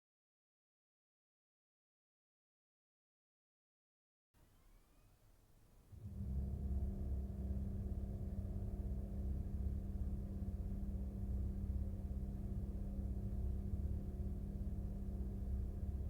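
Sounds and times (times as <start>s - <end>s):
low sustained music notes: 4.4s - 16.0s.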